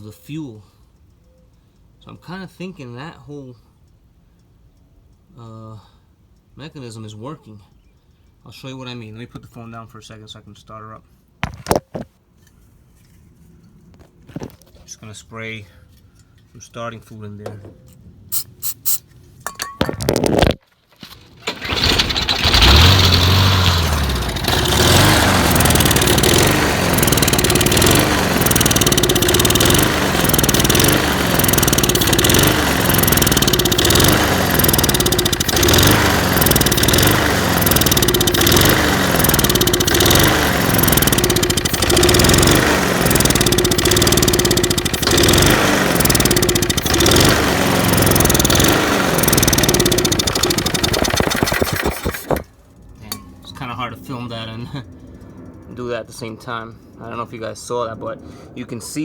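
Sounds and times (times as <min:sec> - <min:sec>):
lawn mower engine running: 0:21.0 - 0:52.6.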